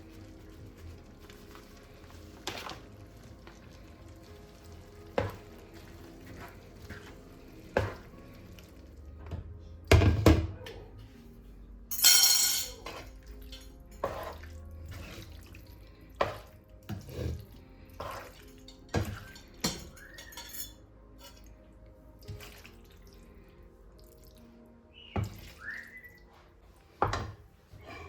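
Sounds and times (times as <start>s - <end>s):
dishes and utensils clinking: 11.9s - 15.2s, 18.0s - 21.6s.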